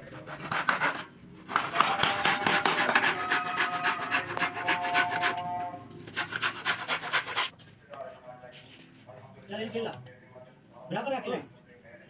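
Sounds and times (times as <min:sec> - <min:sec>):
hand tool rasping wood: 0:00.0 - 0:07.5.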